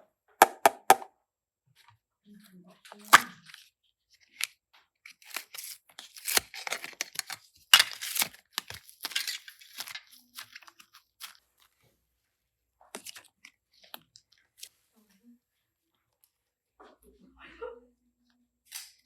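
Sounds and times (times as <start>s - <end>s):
materials crackling and tearing: 5.2s - 9.9s.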